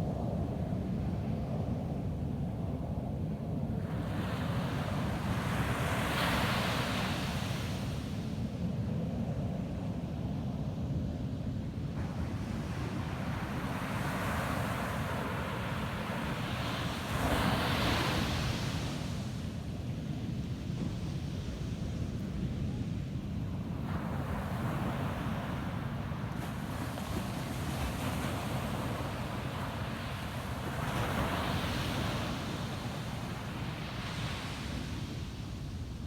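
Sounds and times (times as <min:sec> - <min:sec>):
ocean waves breaking on beach: 0:12.0 - 0:19.8, 0:23.5 - 0:36.0.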